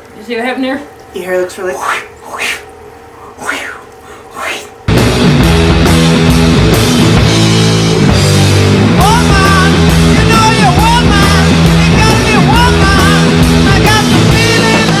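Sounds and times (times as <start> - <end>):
loud rock music: 4.9 - 15.0.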